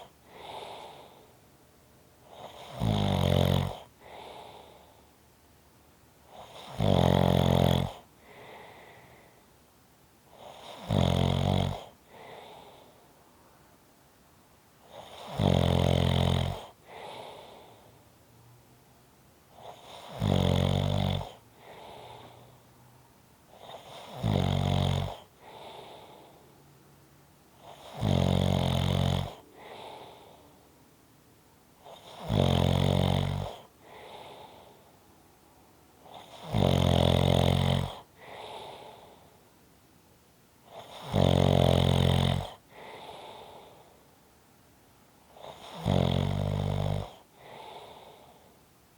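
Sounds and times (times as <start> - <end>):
loud snoring: 0.0 - 1.2, 2.3 - 4.8, 6.3 - 8.9, 10.3 - 12.8, 14.8 - 17.9, 19.5 - 22.5, 23.5 - 26.3, 27.6 - 30.3, 31.8 - 34.6, 36.0 - 39.1, 40.6 - 43.8, 45.3 - 48.4
soft breath out: 0.0 - 1.5, 4.0 - 5.2, 8.2 - 9.6, 12.0 - 13.8, 16.7 - 18.2, 21.4 - 22.9, 25.2 - 26.8, 29.4 - 30.8, 33.6 - 35.2, 38.0 - 39.5, 42.7 - 44.2, 47.2 - 48.7.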